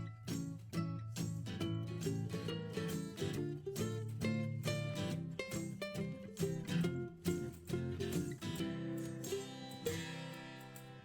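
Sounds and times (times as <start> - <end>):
country acoustic guitar music: 0.0 - 11.0.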